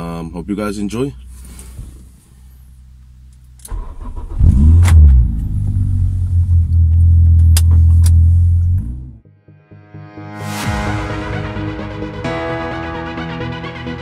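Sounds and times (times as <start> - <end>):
car engine starting and revving: 3.7 - 9.2.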